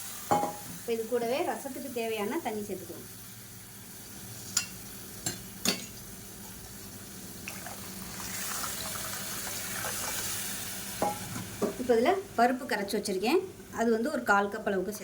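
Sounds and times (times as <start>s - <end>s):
low sizzle: 0.0s - 15.0s
water pouring into a pan: 7.4s - 10.8s.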